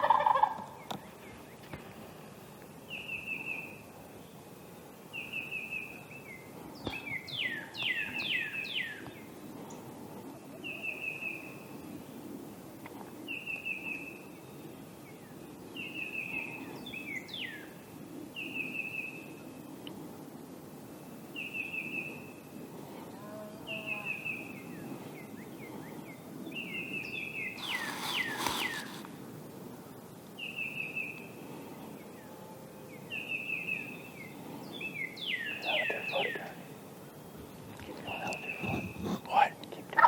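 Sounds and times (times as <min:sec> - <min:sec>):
birds calling: 0:23.7 - 0:29.0, 0:33.0 - 0:40.0
harsh rattling bird call: 0:27.5 - 0:28.9
songbird trilling: 0:34.8 - 0:36.6.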